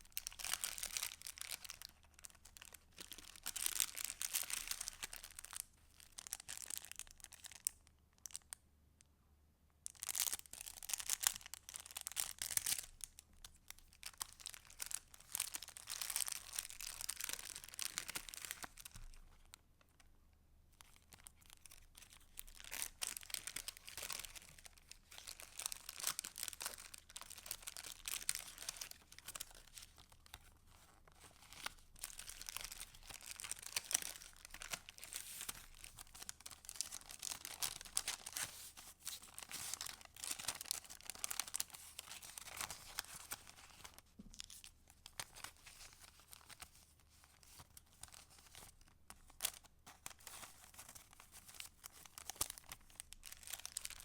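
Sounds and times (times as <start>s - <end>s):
paper rustling and crinkling: 21.1s - 54.0s.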